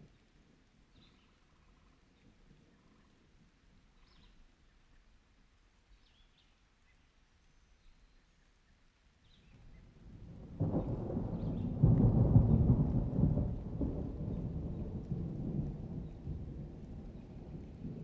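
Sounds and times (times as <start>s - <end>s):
thunderclap rumble: 10.0s - 18.0s.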